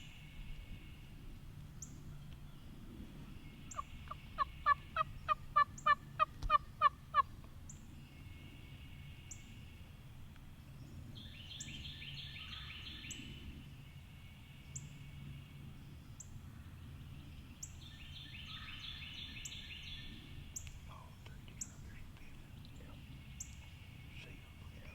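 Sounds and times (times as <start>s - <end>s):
songbirds trilling and chipping: 0.0s - 24.9s
turkey yelping: 4.4s - 7.3s.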